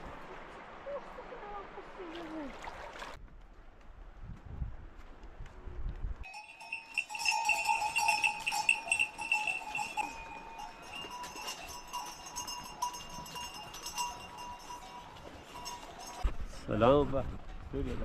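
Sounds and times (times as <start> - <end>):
livestock bells jangling: 6.2 - 16.3.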